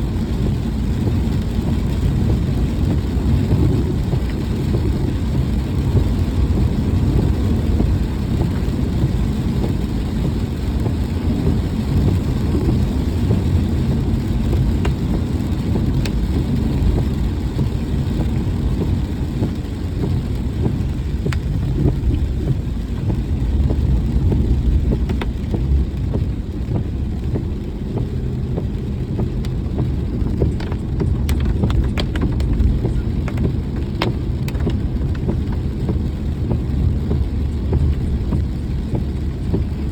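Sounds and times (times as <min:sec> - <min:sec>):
road and engine rumble: 0:00.0 - 0:39.9.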